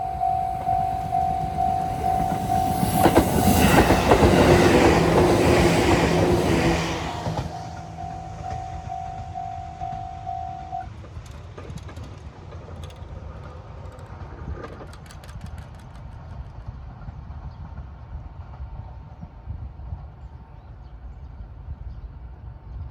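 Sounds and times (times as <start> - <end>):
level crossing bell ringing: 0.0 - 3.9, 7.5 - 10.8
electric train rumble: 0.0 - 22.5.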